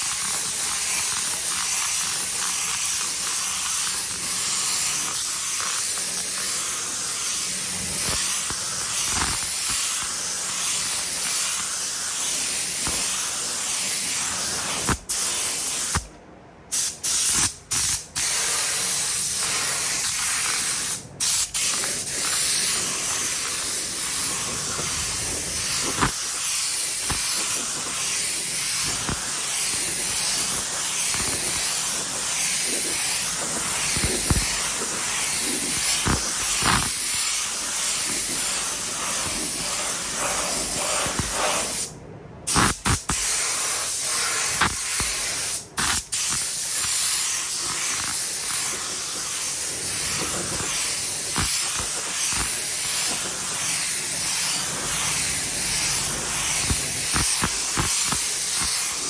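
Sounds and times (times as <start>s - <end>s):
paint spray gun hissing: 0.0s - 16.1s, 16.7s - 41.9s, 42.5s - 59.0s.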